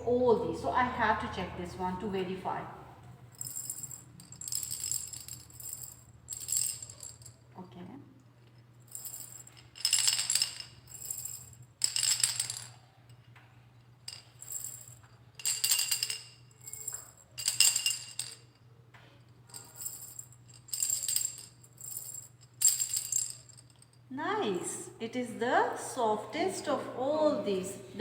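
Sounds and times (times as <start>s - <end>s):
steady low hum: 0.0s - 28.0s
sound box cylinders rattling: 8.9s - 12.7s.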